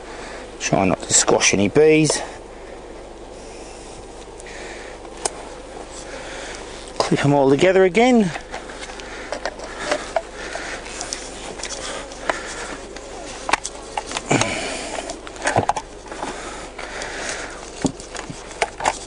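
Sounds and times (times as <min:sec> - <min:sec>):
hive clips clicking and knocking: 0:08.4 - 0:19.0.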